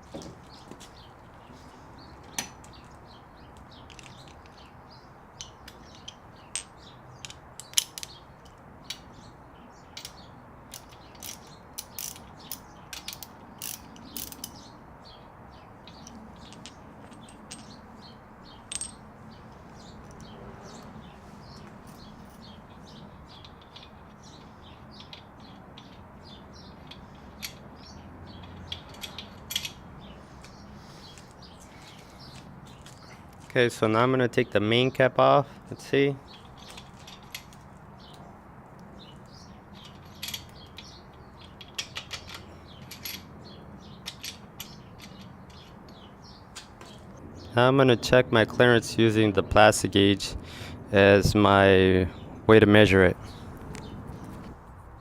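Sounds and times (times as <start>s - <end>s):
wrench ratcheting: 10.0s - 14.6s.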